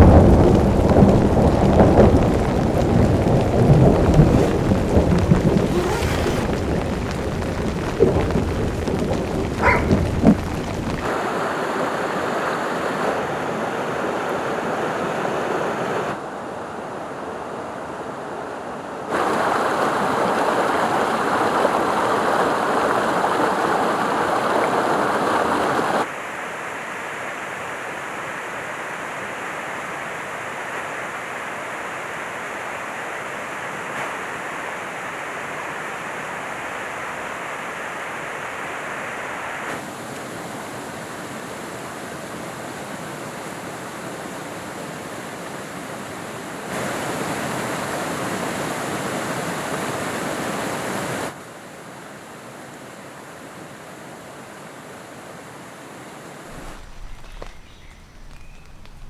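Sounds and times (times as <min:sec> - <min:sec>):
rushing water: 0:00.0 - 0:11.5, 0:19.1 - 0:26.4, 0:56.5 - 0:59.0.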